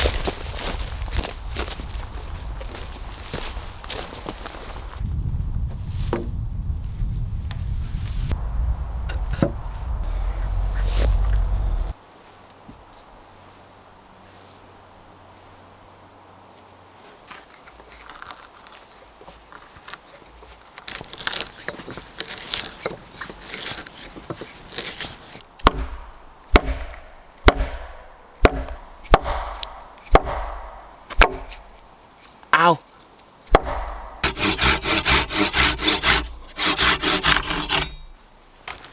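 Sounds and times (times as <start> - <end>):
scraping and rustling of wood: 17.2 - 25.5, 34.2 - 38.9
axe chopping wood: 25.6 - 31.7, 33.5 - 38.2.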